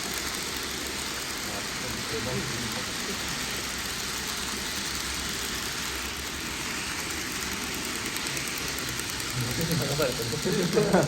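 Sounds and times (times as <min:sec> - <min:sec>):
model trains rolling hum: 0:00.0 - 0:11.0.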